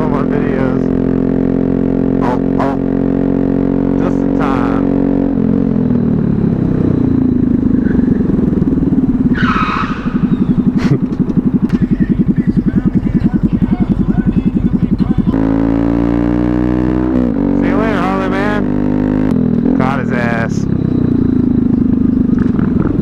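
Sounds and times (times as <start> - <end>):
motorcycle engine puttering: 5.8 - 15.6, 19.2 - 23.0.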